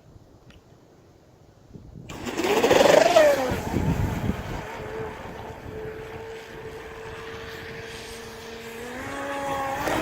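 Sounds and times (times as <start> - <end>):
electric motor whining: 2.1 - 10.0.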